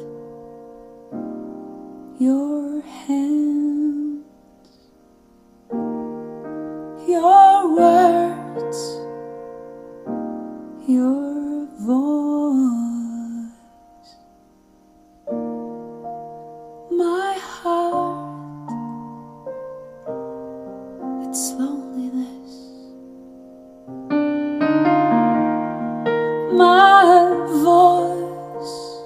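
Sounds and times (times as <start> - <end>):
electric piano chords: 0.0 - 29.0
person singing: 2.1 - 4.4, 6.9 - 9.3, 10.8 - 14.3, 16.9 - 19.1, 21.1 - 23.0, 24.8 - 29.0.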